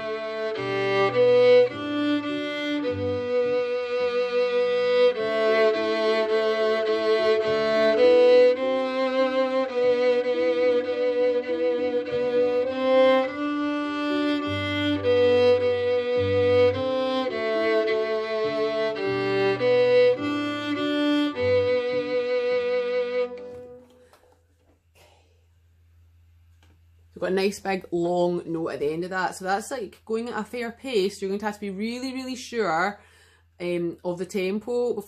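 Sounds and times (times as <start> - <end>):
violin playing simple tune: 0.0 - 24.2
recorded backing accompaniment: 0.0 - 24.7.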